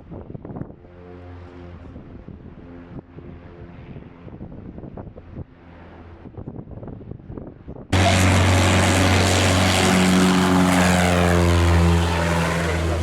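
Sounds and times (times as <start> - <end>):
propeller aircraft engine passing: 8.0 - 13.0.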